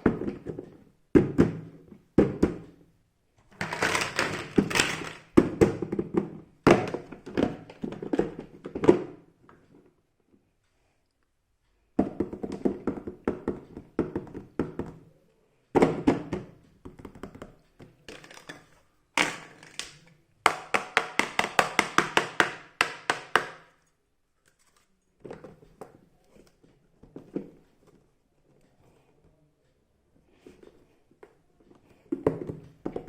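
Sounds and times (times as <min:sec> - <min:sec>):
plastic toy pieces clicking: 0:03.6 - 0:05.3.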